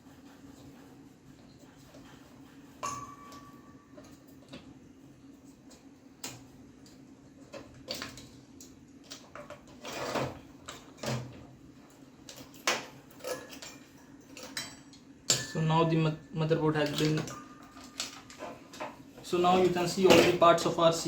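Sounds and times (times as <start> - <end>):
short metallic ring: 2.8 - 3.8.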